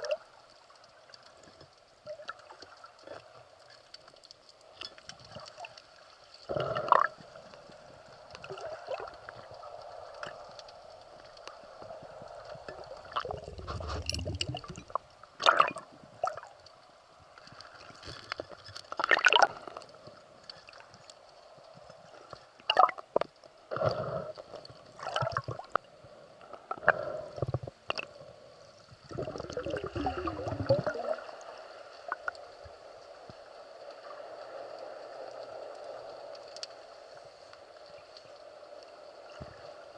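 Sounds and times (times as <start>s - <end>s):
underwater gurgling and sloshing: 0.0s - 39.9s
bubbling water rushes: 12.6s - 16.5s, 18.9s - 19.7s, 25.0s - 25.8s, 29.0s - 31.4s.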